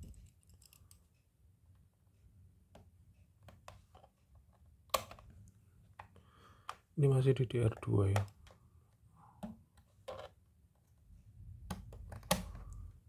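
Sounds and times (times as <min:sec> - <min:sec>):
faint clicks and taps: 0:07.5 - 0:11.0.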